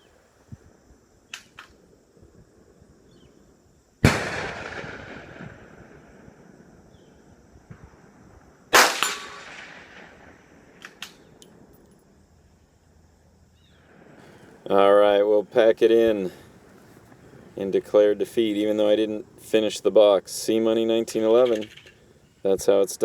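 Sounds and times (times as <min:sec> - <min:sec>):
rifle shots with echo: 0:04.0 - 0:06.5, 0:08.7 - 0:11.4.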